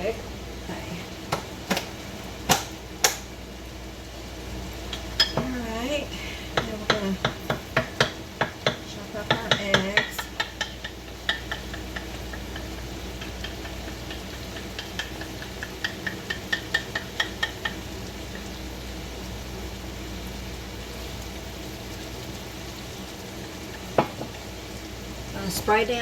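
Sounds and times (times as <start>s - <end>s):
air conditioner humming: 0.0s - 26.0s
utensil clicking against bowl: 6.6s - 18.5s.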